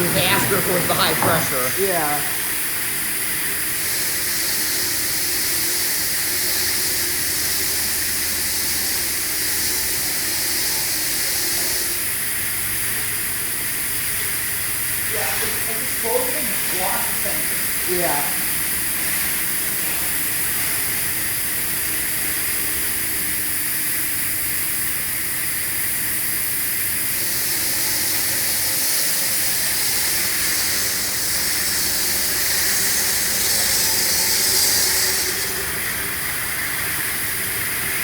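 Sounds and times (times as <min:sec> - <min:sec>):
low machine hum: 0:00.0 - 0:03.6
water jets spraying: 0:00.0 - 0:38.0.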